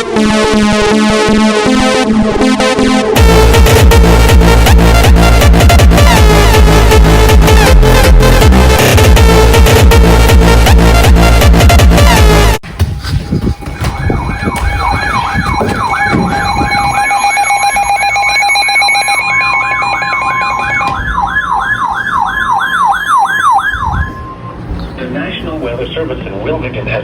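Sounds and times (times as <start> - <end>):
loud electronic music: 0.0 - 12.6, 13.4 - 22.9
steady electronic alert tone: 13.5 - 24.6
electronic siren sweeping down: 13.6 - 24.8.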